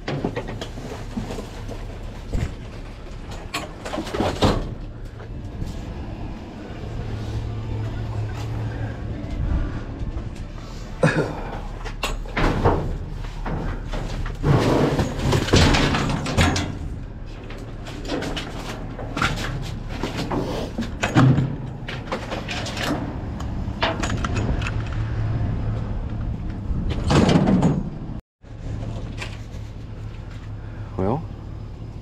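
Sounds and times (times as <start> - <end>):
items clunking and knocking: 0.0 - 6.2, 7.1 - 30.5
clattering and scraping: 0.0 - 6.4, 11.6 - 28.0
steady low hum: 0.4 - 27.1, 27.9 - 32.0.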